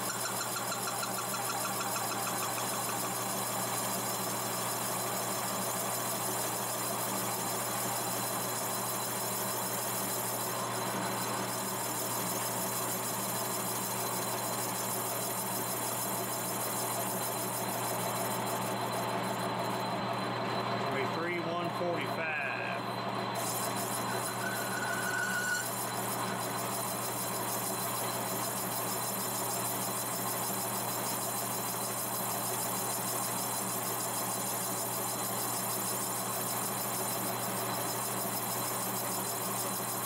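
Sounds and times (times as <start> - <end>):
metal lathe humming: 22.8 - 27.5.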